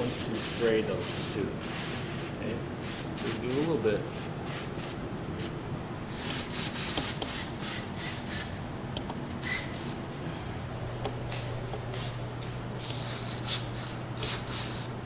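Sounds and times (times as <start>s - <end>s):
aerosol can spraying: 6.2s - 8.5s, 12.8s - 14.9s.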